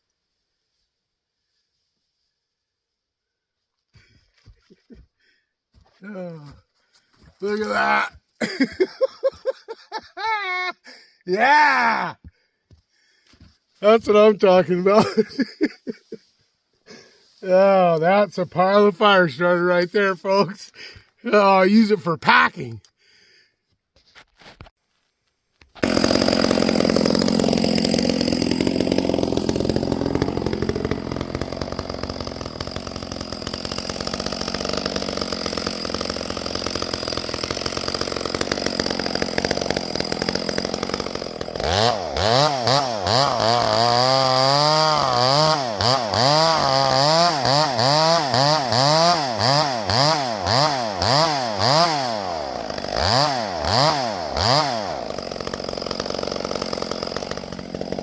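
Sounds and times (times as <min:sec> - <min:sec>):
chainsaw revving: 0:07.4 - 0:09.0, 0:25.8 - 0:58.0.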